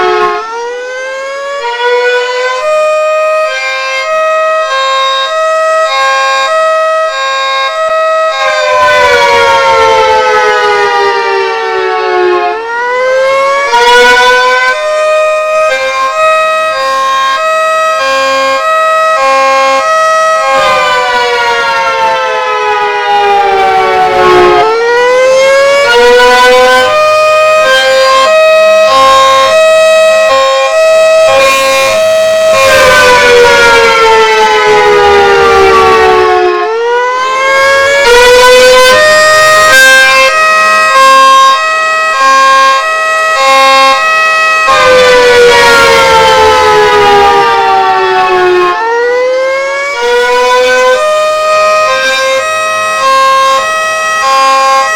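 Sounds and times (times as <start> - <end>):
loud siren cycling tones: 0.0 - 54.9.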